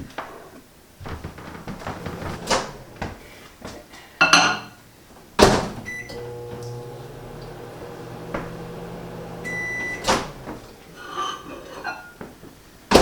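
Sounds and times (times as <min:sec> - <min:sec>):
microwave humming: 0:01.0 - 0:03.3, 0:05.4 - 0:11.4
microwave door clunking: 0:01.1 - 0:03.2, 0:05.4 - 0:11.0.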